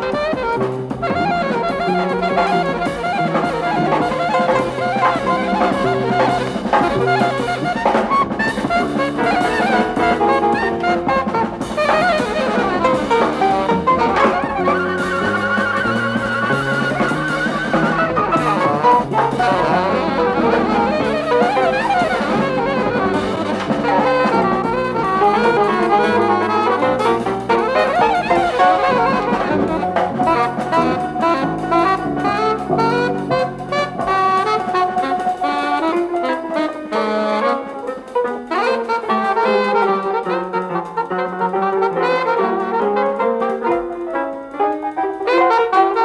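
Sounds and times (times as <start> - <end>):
walking bass line: 0.0 - 36.8
drum kit: 0.0 - 46.0
saxophone: 0.0 - 46.0
trumpet: 0.0 - 46.0.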